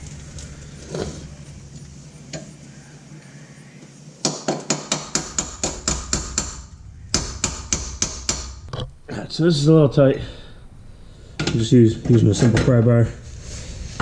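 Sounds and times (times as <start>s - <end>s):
hammer striking metal: 4.2s - 8.8s.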